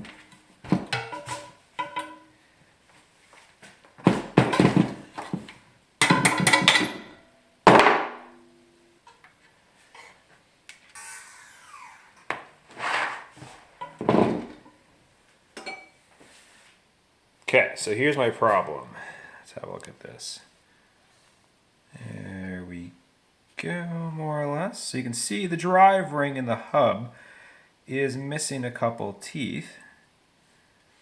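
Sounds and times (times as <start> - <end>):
metal knocks and clanks: 0.0 - 2.3, 4.0 - 8.6, 13.4 - 14.8
sharp ringing metal strike: 8.1 - 8.9.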